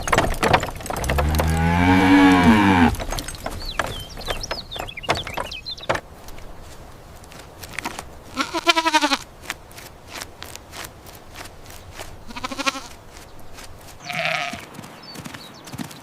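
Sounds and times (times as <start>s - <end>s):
goat or sheep bleating: 1.0s - 3.2s, 7.8s - 9.3s, 12.2s - 13.2s, 14.0s - 14.7s.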